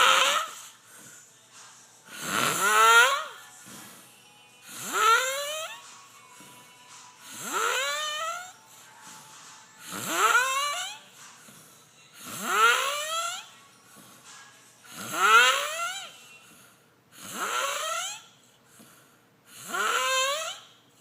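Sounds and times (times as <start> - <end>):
chicken making snore-like calls: 2.1 - 3.4, 19.6 - 20.6.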